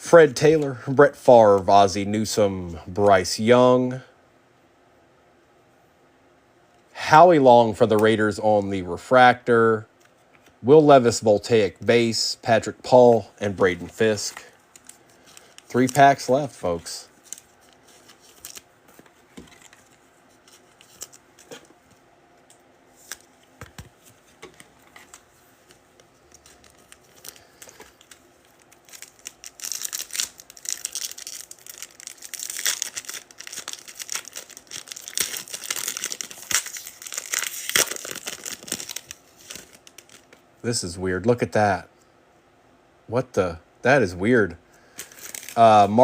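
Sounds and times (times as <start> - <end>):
foil wrapper tearing and crinkling: 26.5 - 40.4, 45.0 - 45.9.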